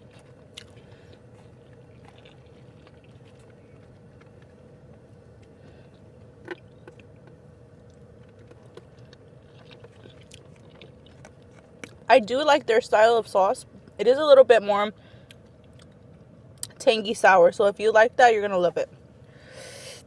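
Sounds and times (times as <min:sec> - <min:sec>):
person chewing: 0:00.0 - 0:12.1, 0:15.3 - 0:16.8
steady low hum: 0:00.0 - 0:20.0.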